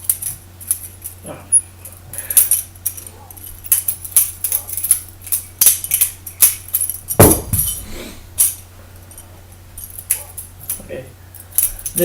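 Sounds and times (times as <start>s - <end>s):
heavy thump: 7.2s - 8.4s.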